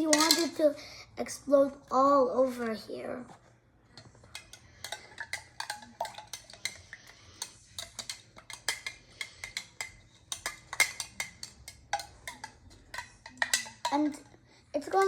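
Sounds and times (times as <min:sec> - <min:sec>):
spoon clinking against cup: 0:04.3 - 0:14.0.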